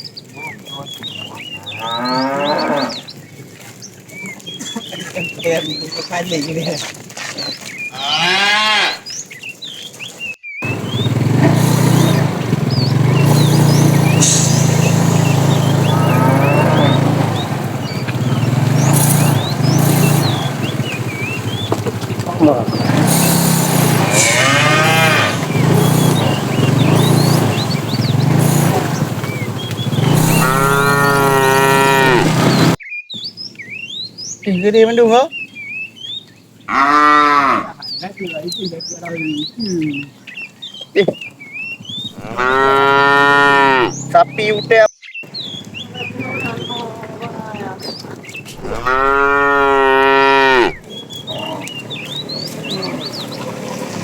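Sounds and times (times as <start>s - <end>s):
cows mooing: 1.4s - 3.2s, 7.9s - 9.1s, 10.6s - 32.8s, 36.7s - 37.9s, 42.1s - 44.7s, 48.5s - 54.0s
faint bird chirps: 9.1s - 17.1s, 17.8s - 21.8s.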